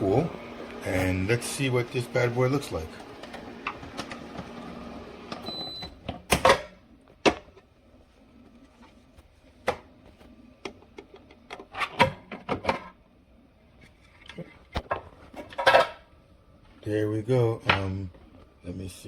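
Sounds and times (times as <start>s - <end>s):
ice cream maker humming: 0.0s - 5.7s.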